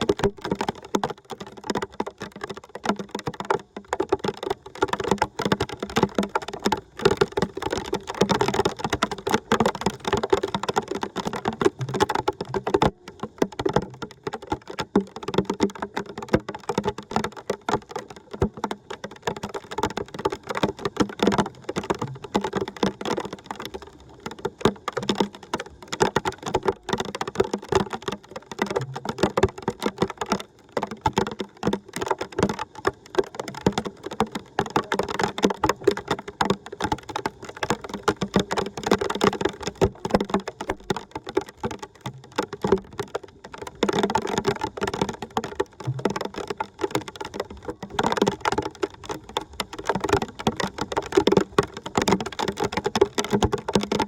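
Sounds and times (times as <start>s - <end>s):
water splashing and trickling: 0.0s - 54.0s.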